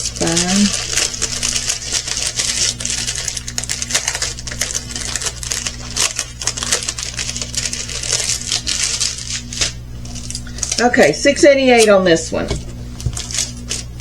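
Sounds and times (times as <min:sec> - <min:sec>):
plastic bag rustling: 0:00.0 - 0:14.0.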